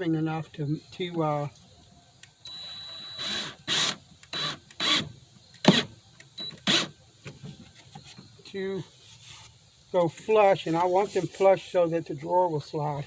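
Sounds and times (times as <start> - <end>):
screws grinding into wood: 3.2 - 5.9.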